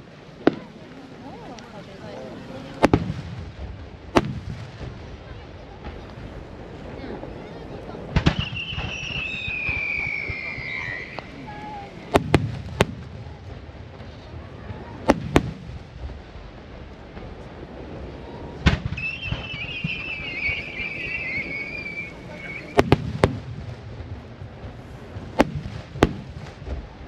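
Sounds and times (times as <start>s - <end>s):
steady low rumble: 0.0s - 8.2s, 11.0s - 19.0s, 19.6s - 27.0s
wavering high whistle: 8.4s - 11.3s, 19.0s - 22.8s.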